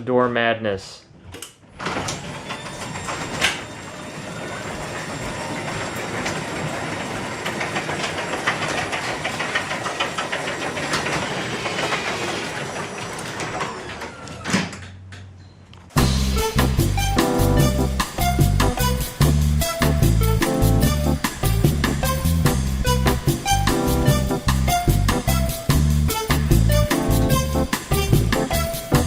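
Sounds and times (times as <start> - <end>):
garage door opener click: 1.3 - 15.9
garage door clunk: 1.4 - 16.0
garage door rollers clattering: 1.6 - 15.4, 16.6 - 29.0.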